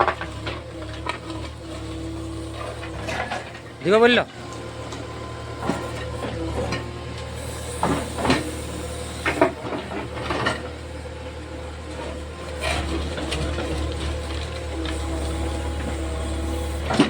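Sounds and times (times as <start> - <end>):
short knocks and scrapes: 0.0 - 3.8, 4.5 - 10.7
diesel engine running: 0.0 - 17.0.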